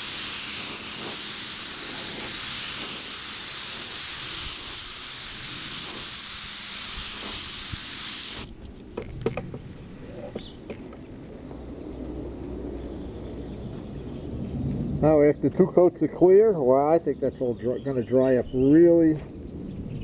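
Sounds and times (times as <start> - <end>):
paint spray gun hissing: 0.0 - 8.5.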